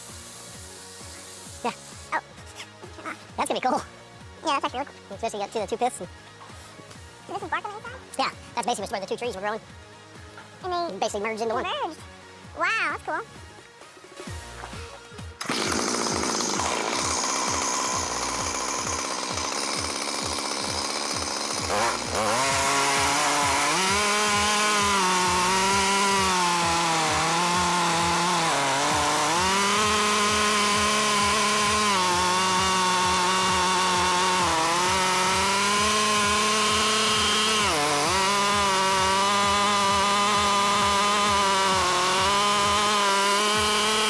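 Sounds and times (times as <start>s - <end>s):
chainsaw cutting log: 0.0s - 3.9s, 13.9s - 44.0s.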